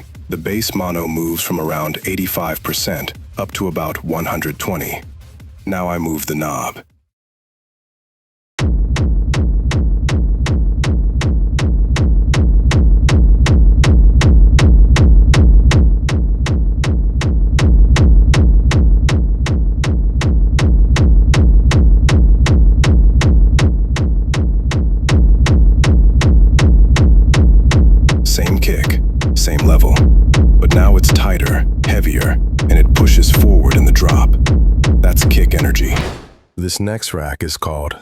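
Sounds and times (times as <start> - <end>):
techno kick drum: 8.6 - 36.4.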